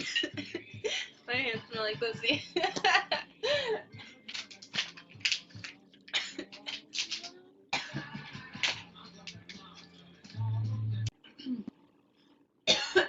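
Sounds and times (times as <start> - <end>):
girl coughing and breathing: 12.7 - 13.0.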